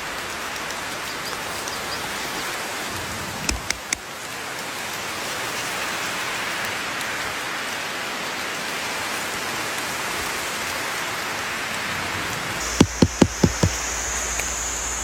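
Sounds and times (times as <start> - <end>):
steady rain hiss: 0.0 - 15.0
sharp clicks: 3.5 - 4.0, 12.6 - 13.8
high steady buzz: 12.6 - 15.0.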